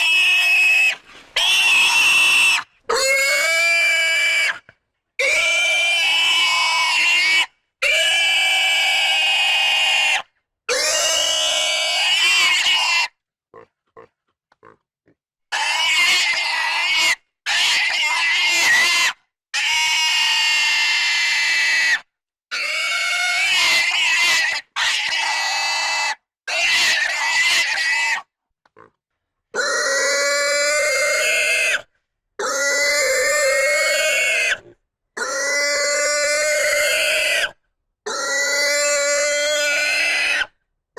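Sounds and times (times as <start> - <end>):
pig squealing: 0.0 - 4.6, 5.2 - 13.2, 15.5 - 28.3, 29.6 - 40.6
faint pig grunts: 13.5 - 15.2.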